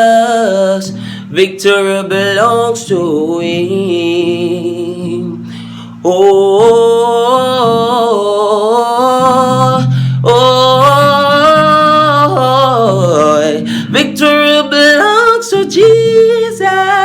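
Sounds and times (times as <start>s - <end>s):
person singing gospel song: 0.0s - 17.0s.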